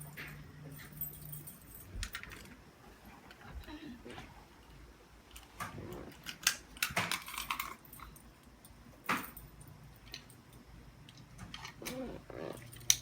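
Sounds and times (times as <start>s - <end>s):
keys jangling: 0.0s - 2.5s.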